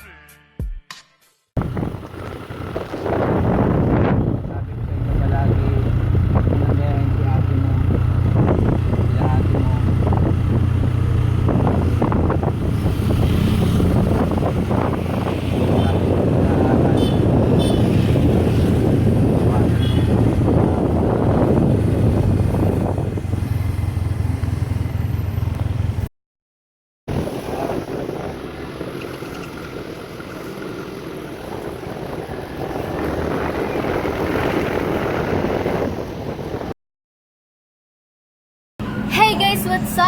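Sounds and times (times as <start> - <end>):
motor running: 1.6 - 13.6
wind buffeting microphone: 1.6 - 26.1, 27.1 - 36.8.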